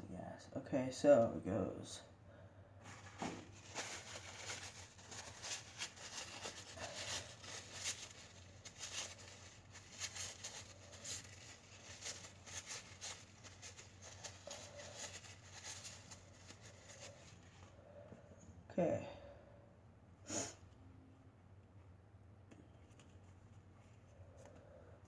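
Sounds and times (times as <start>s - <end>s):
rustling: 2.8s - 17.8s.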